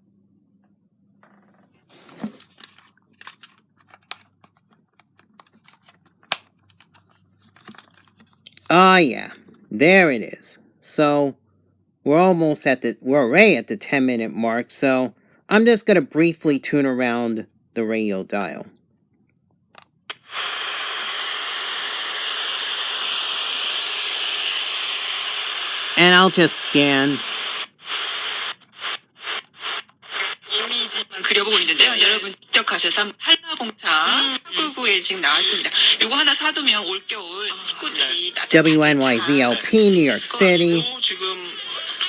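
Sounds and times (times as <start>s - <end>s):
radio static hiss: 20.1s - 42.0s.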